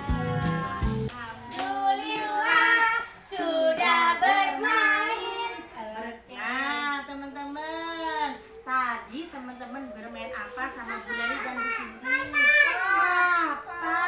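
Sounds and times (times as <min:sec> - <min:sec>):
recorded music accompaniment: 0:00.0 - 0:01.5
children singing together: 0:00.0 - 0:05.8, 0:12.0 - 0:14.0.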